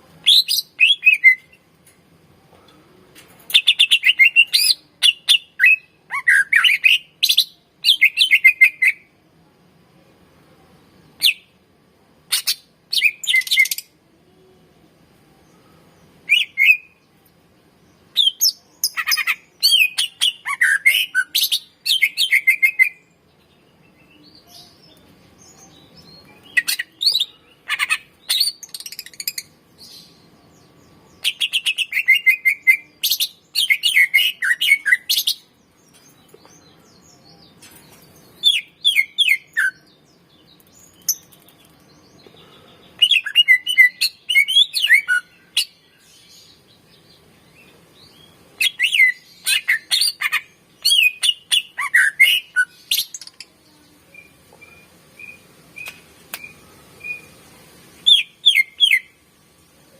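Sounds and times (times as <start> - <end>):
bird singing whistled notes: 0.2 - 1.6, 3.7 - 9.1, 16.2 - 17.0, 31.2 - 35.5, 38.4 - 40.2, 43.0 - 46.6, 48.0 - 53.4, 54.1 - 57.4, 58.0 - 59.2.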